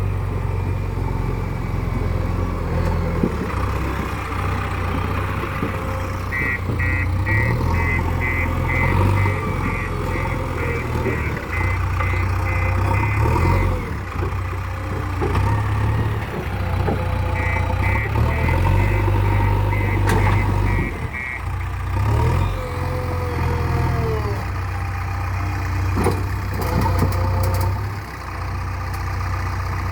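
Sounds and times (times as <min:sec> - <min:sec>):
diesel engine running: 0:00.0 - 0:29.9
reversing alarm beeps: 0:06.3 - 0:13.9, 0:17.3 - 0:21.4.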